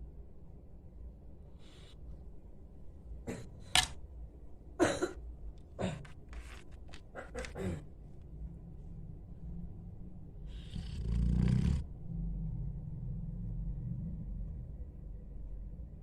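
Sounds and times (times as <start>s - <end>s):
dog snoring: 10.4s - 14.2s.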